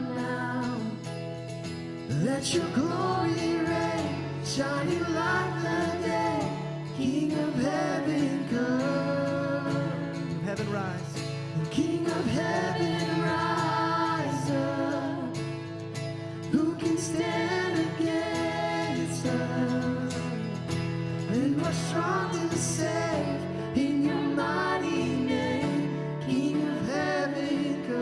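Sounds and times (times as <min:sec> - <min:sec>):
people singing: 0:00.0 - 0:01.3, 0:02.1 - 0:28.0
guitar: 0:00.0 - 0:28.0.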